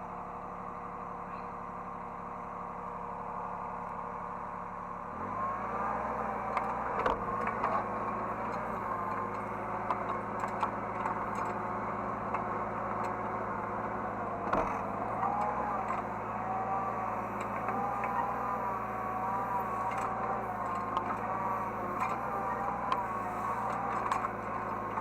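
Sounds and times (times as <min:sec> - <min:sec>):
diesel engine running: 0:00.0 - 0:25.0
hydraulic whine: 0:05.0 - 0:25.0.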